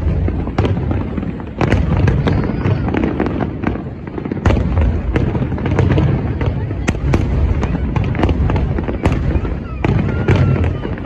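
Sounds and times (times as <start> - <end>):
firework booms: 0.0 - 11.0
firework crackles: 0.0 - 11.0.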